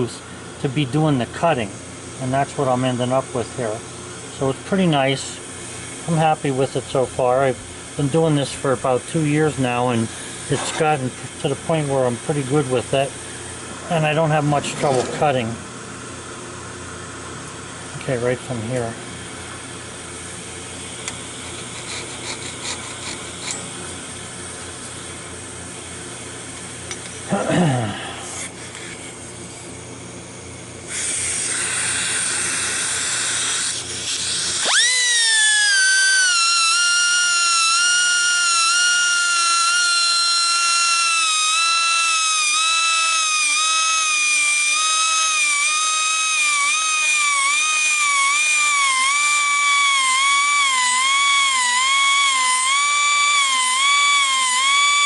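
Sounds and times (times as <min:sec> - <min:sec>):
air tool high whine: 0:00.0 - 0:55.0
air hiss: 0:30.9 - 0:55.0.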